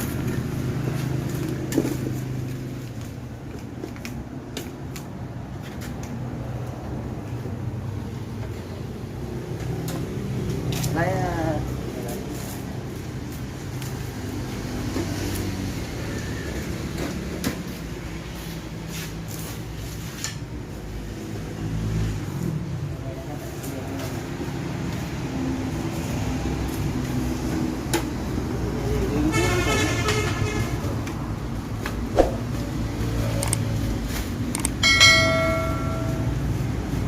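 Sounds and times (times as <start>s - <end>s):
vehicle engines running: 0.0s - 37.0s
car horn: 29.3s - 30.8s.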